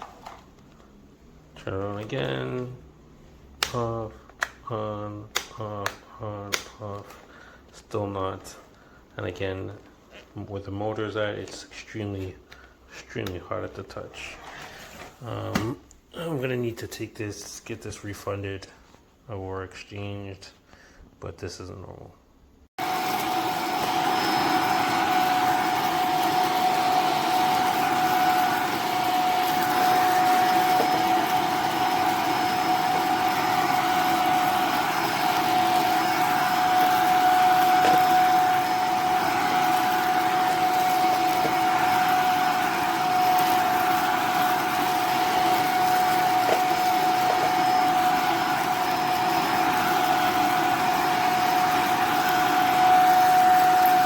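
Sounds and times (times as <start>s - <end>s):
vacuum cleaner motor running: 22.8s - 54.0s.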